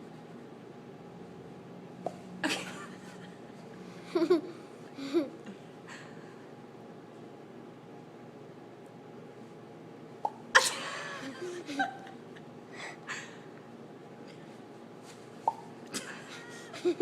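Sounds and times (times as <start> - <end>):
girl making mouth pops: 15.5 - 15.7.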